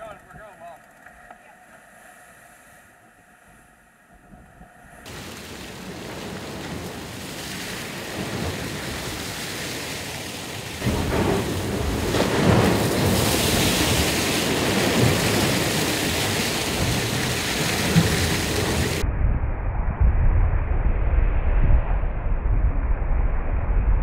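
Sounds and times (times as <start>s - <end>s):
rushing wind: 1.8s - 24.0s
rushing water: 5.0s - 19.0s.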